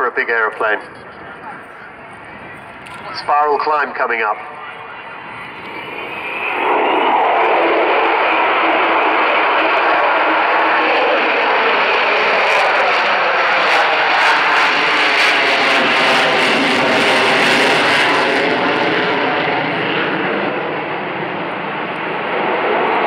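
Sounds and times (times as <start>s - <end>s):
jet engines roaring: 0.0s - 23.0s.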